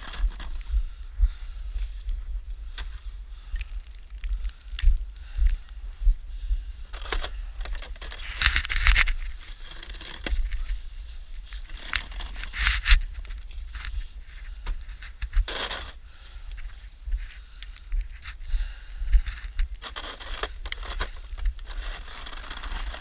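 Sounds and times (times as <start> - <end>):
steady low rumble: 0.0 - 23.0
snow shovel scraping snow: 15.0 - 16.0, 19.8 - 23.0.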